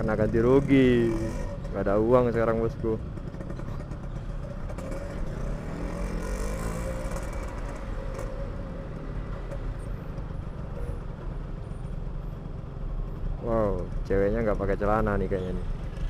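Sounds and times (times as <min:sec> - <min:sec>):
road and traffic noise: 0:00.0 - 0:16.0
two-stroke motorcycle engine: 0:00.0 - 0:16.0.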